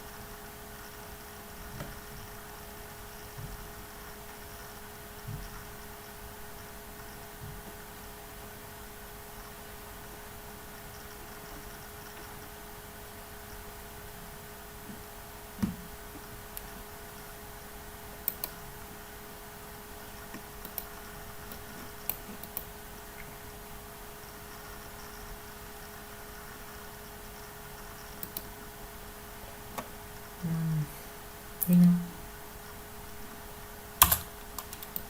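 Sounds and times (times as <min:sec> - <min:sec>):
faint electrical hum: 0:00.0 - 0:35.0
steady background hiss: 0:00.0 - 0:35.0
computer clicks: 0:18.2 - 0:18.6, 0:20.3 - 0:22.7, 0:27.4 - 0:28.5, 0:34.0 - 0:35.0.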